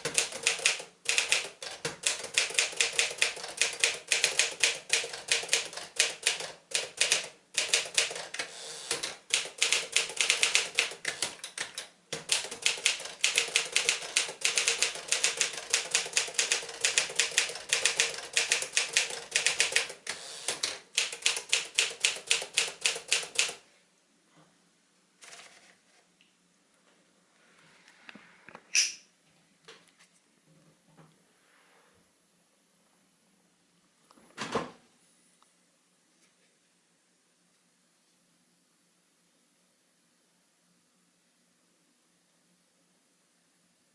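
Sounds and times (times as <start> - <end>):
typewriter keys striking: 0.0 - 23.6.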